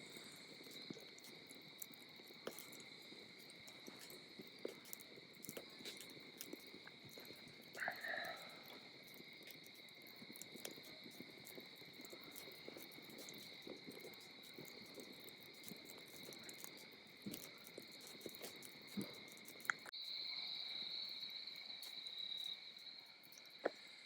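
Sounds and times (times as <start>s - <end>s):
campfire crackling: 0.0s - 24.0s
crickets chirping: 0.0s - 24.0s.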